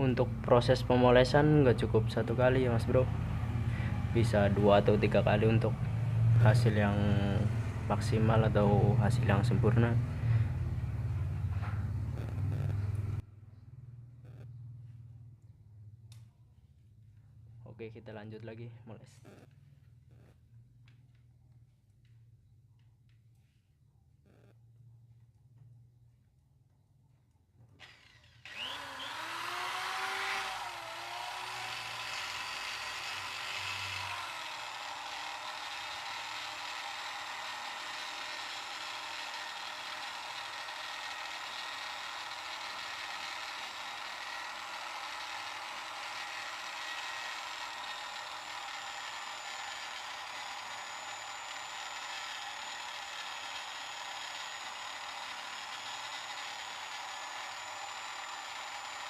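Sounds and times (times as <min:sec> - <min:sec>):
electric drill buffing metal: 0:27.8 - 0:59.0.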